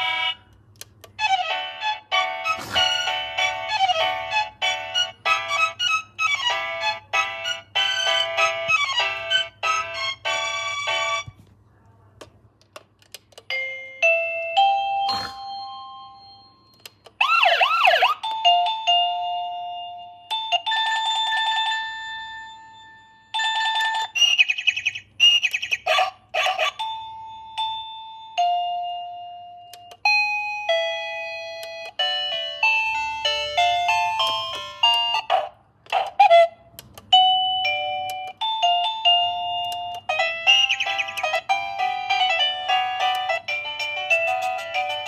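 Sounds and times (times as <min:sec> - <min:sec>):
electronic doorbell chime tunes: 0:03.0 - 0:11.3, 0:13.5 - 0:24.5, 0:26.8 - 0:35.3, 0:37.1 - 0:45.0.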